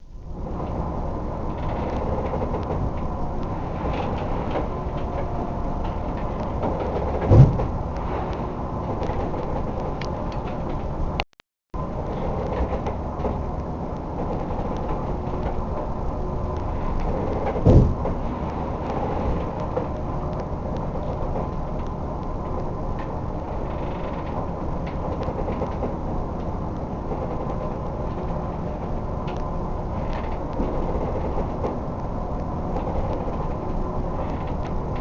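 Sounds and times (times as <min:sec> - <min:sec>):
boat creaking and rattling: 0:00.0 - 0:11.2, 0:11.8 - 0:35.0
boat engine droning: 0:00.0 - 0:11.2, 0:11.8 - 0:35.0
heavy thump: 0:07.2 - 0:07.8, 0:17.6 - 0:18.1.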